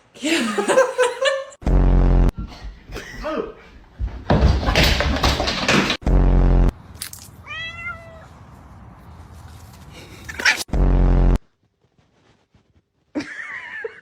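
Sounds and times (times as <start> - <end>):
short low buzz: 1.6 - 2.3, 10.7 - 11.4
cat meowing: 7.4 - 8.4.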